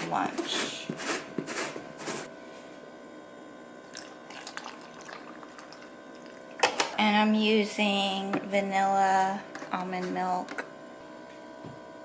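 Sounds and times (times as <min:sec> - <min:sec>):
low room hum: 0:00.0 - 0:12.0
rustles and scrapes: 0:00.4 - 0:02.7.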